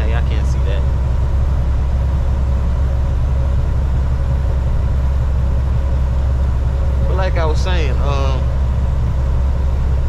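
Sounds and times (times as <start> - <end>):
faint steady hum: 0.0 - 10.0
truck engine rumble: 0.0 - 10.0.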